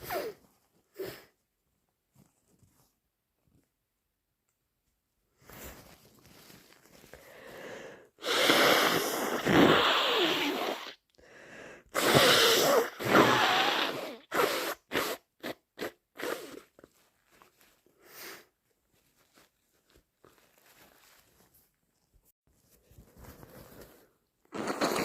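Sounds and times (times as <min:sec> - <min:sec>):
person blowing nose into tissue: 0:00.0 - 0:01.3, 0:07.1 - 0:18.6, 0:23.4 - 0:25.0.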